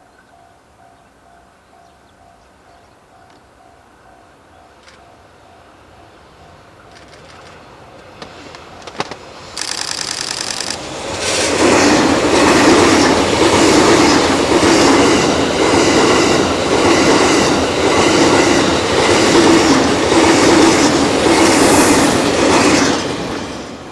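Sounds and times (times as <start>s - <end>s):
rapid ticking: 9.6s - 10.8s.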